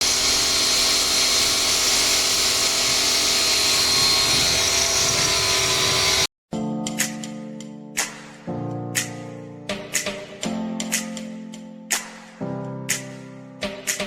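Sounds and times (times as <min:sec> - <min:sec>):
motor-driven machine whining hum: 0:00.0 - 0:06.3.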